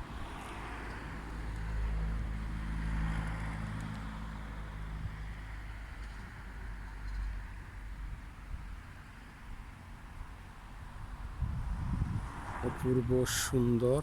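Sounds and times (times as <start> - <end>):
vehicle engine passing: 11.4 - 14.0.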